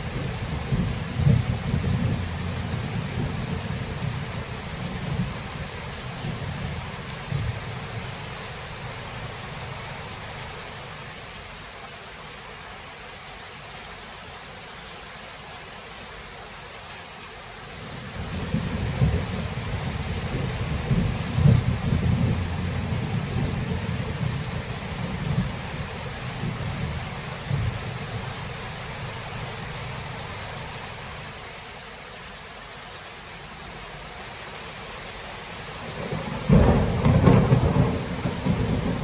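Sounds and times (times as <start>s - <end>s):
steady rain: 0.0s - 39.0s
rolling thunder: 0.2s - 7.7s, 18.2s - 28.3s, 35.9s - 39.0s.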